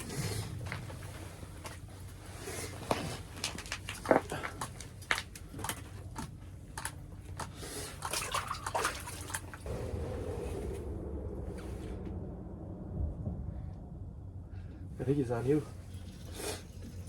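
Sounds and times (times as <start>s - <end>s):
steady low hum: 0.0s - 17.0s
water splashing and dripping: 3.5s - 9.7s.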